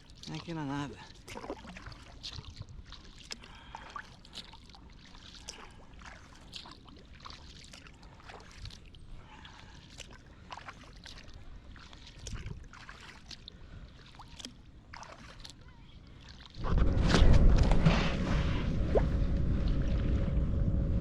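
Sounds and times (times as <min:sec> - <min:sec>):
water dripping off paddle: 0:00.0 - 0:15.6
paddle splashing water: 0:00.0 - 0:20.5
low steady rumble: 0:16.6 - 0:21.0.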